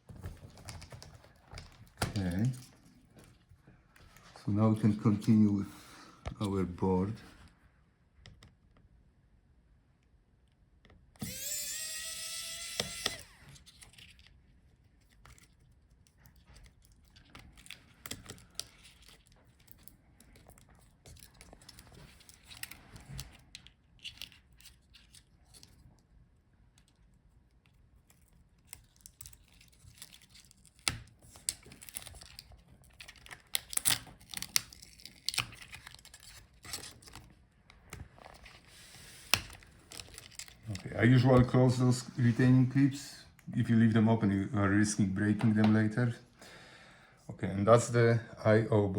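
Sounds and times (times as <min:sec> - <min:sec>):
electric screwdriver running: 0:11.2 - 0:13.5.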